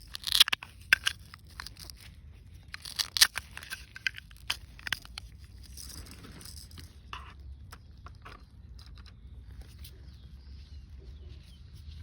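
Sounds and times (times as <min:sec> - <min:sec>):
crunching roasted fish: 0:00.0 - 0:07.0.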